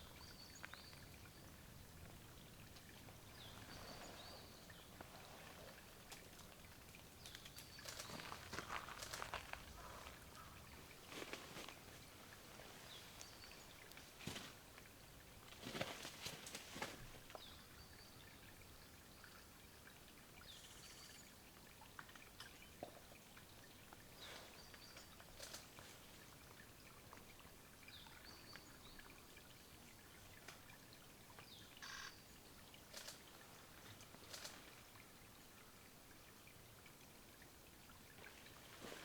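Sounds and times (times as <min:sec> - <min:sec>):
soft rustling: 0:07.8 - 0:17.4, 0:38.2 - 0:39.0
high thin bird calls: 0:31.8 - 0:32.2.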